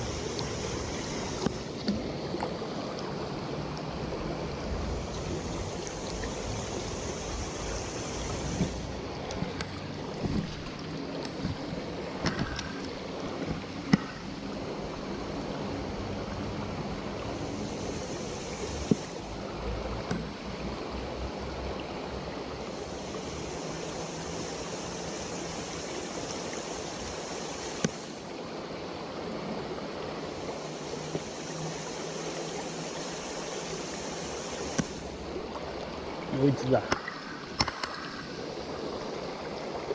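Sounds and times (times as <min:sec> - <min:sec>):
stream water rushing: 0:00.0 - 0:39.9
high even hiss: 0:04.8 - 0:09.0, 0:17.3 - 0:19.3, 0:22.8 - 0:28.2, 0:30.4 - 0:35.2.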